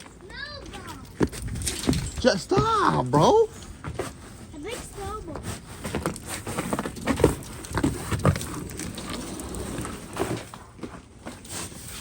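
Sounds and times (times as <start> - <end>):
crunching in piled hailstones: 5.2 - 10.6.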